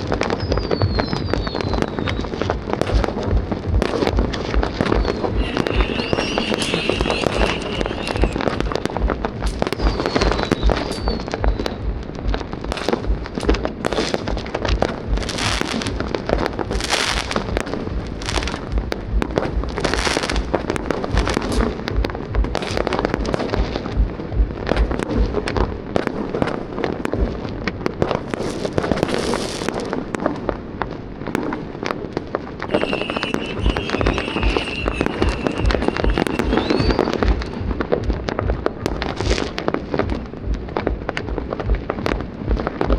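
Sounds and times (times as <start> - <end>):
high firework whistle: 0.0 - 2.6, 4.8 - 11.9, 32.7 - 38.0
fireworks bangs and crackles: 0.0 - 42.9.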